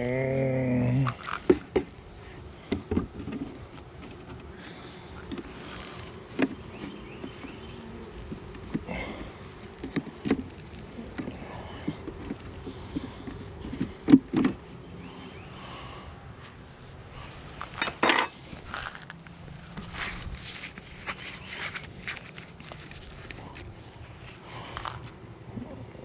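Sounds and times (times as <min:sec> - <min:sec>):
honey bees buzzing: 0:00.0 - 0:26.0
beehive equipment knocking and clinking: 0:02.7 - 0:14.8.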